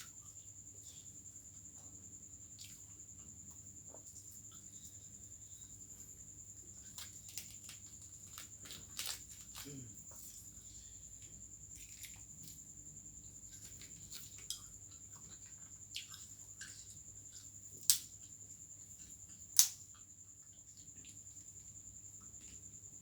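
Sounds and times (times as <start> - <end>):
chewing: 13.4 - 17.8.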